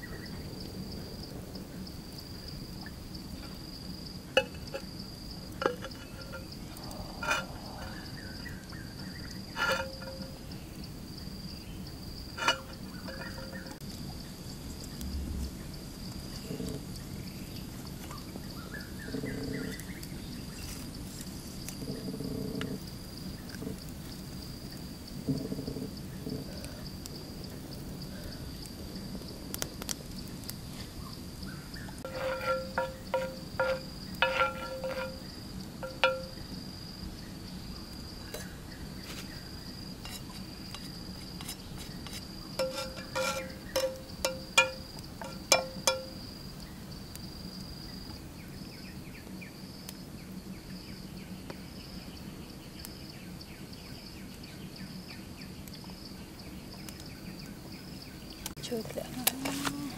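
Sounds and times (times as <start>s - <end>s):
insect trilling: 2.4s - 13.8s, 31.6s - 37.0s, 39.4s - 47.2s
ringing clinks: 9.6s - 10.4s, 12.4s - 13.8s, 32.1s - 35.2s, 35.8s - 36.4s, 42.6s - 46.2s.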